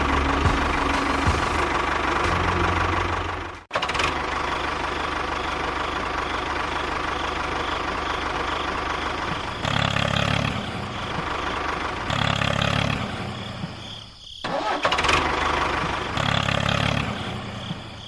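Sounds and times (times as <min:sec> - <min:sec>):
engine running: 0:00.0 - 0:13.8.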